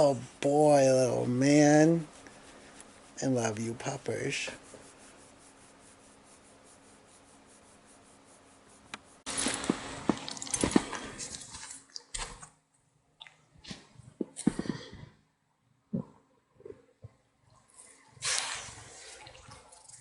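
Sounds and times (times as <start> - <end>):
faint hiss: 0.0 - 9.8.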